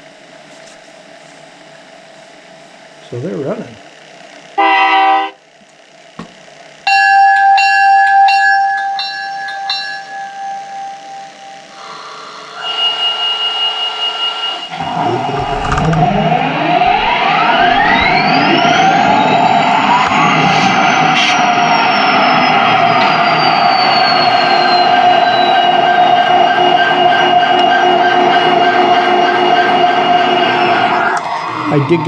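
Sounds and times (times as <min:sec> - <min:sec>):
locomotive bell ringing: 0:06.9 - 0:14.5
turbo whine: 0:09.1 - 0:32.0
diesel engine rumble: 0:14.7 - 0:21.3.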